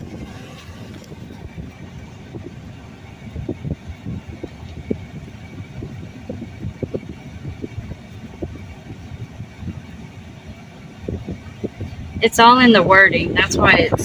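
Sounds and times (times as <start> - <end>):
vehicle and road rumble: 0.0 - 14.0.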